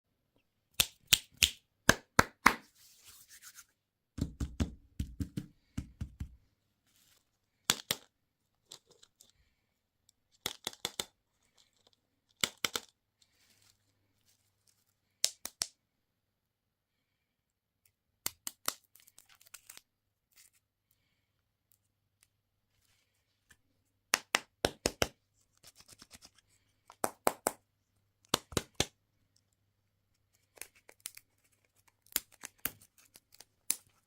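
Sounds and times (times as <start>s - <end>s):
packaging clicks and taps: 10.4s - 11.2s, 12.3s - 13.0s.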